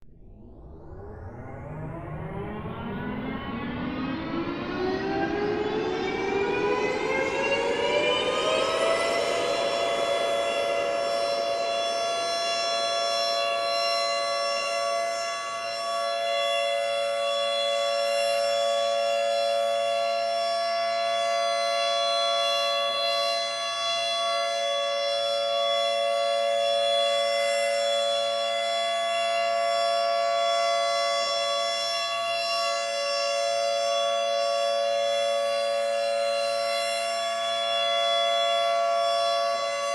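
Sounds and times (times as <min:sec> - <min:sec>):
emergency alert alarm: 0:00.3 - 0:39.9.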